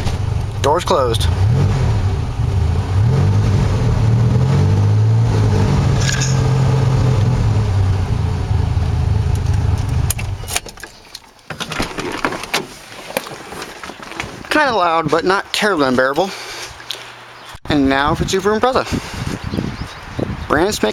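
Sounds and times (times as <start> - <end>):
car engine revving inside cabin: 0.0 - 10.4.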